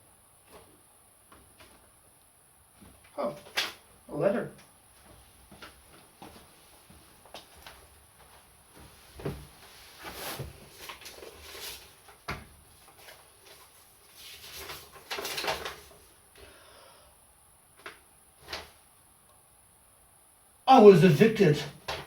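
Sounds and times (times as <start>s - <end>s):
paper rustling: 9.2s - 16.1s.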